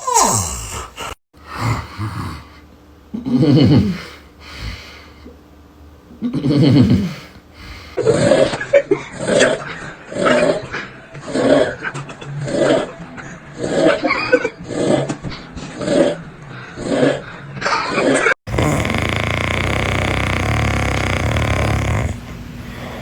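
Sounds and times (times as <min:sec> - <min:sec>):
person snoring: 0:00.0 - 0:05.1, 0:18.5 - 0:23.0.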